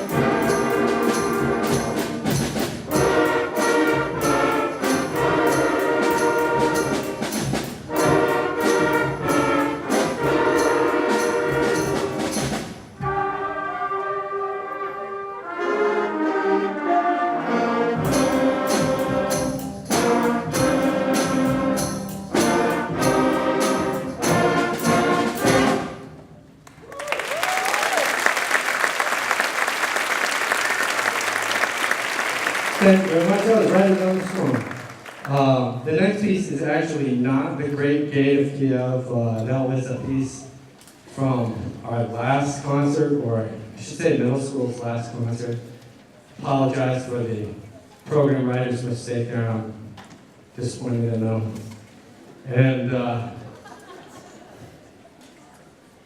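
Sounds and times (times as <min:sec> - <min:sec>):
steady drum beat: 0:00.0 - 0:13.2, 0:18.0 - 0:26.1
concert band playing: 0:00.0 - 0:26.5, 0:30.9 - 0:35.2
audience applauding: 0:26.6 - 0:35.4.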